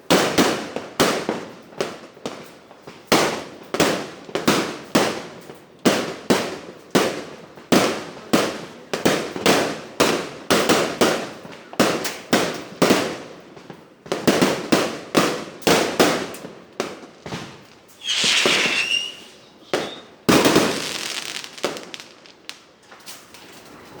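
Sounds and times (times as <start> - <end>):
fireworks bangs: 14.2 - 23.5
firework crackling: 15.3 - 23.8
firework hissing whistle: 17.9 - 22.3.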